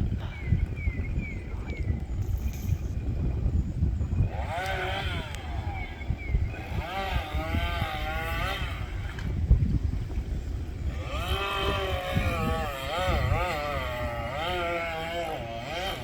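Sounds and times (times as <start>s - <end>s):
wind rumble on microphone: 0.0s - 16.0s
chainsaw revving: 4.3s - 5.9s, 6.6s - 9.2s, 10.9s - 16.0s.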